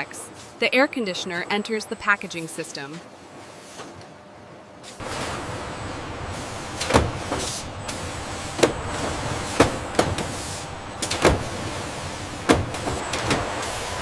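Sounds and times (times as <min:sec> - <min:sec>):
machinery clunks and knocks: 0:05.0 - 0:13.8
packaging machinery running: 0:05.0 - 0:14.0.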